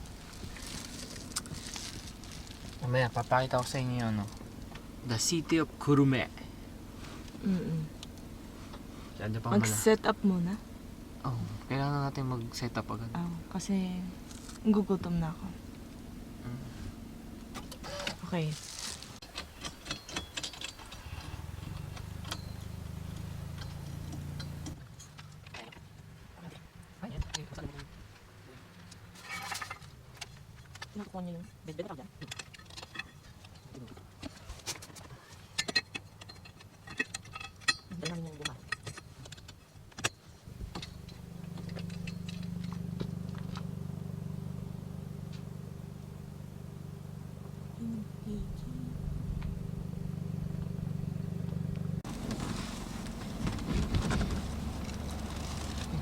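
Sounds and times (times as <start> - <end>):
car engine starting and idling: 0.0 - 56.0
small motor humming: 40.5 - 56.0.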